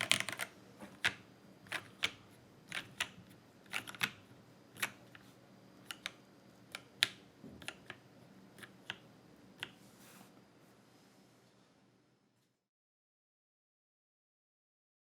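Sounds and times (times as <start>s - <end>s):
mechanical keyboard keystrokes: 0.0s - 4.2s.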